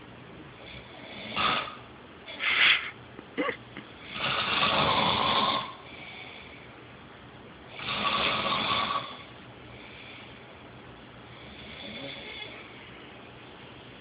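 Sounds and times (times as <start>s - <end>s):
man snoring: 0.6s - 1.9s, 4.0s - 6.3s, 7.7s - 9.3s, 11.4s - 12.6s.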